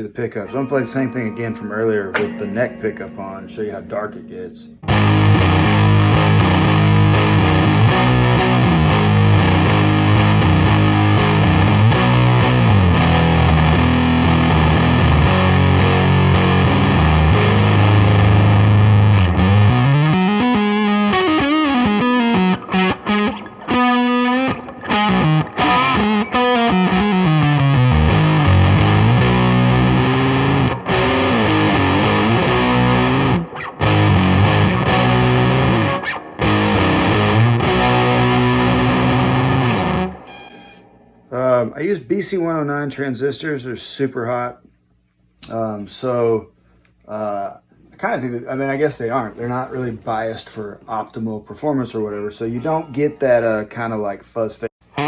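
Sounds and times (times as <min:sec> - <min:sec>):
fuzz electric guitar: 0:04.8 - 0:41.0.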